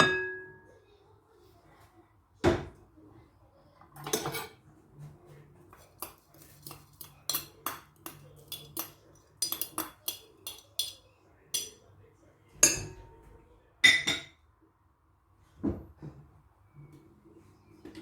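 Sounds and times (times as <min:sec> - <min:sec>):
utensils knocking against dishes: 0:04.0 - 0:04.6, 0:06.7 - 0:11.0, 0:12.6 - 0:13.2.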